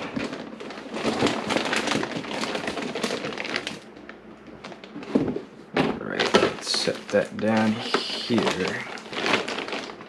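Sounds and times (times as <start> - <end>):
plastic packaging crinkling: 0.0 - 5.4, 6.0 - 10.0.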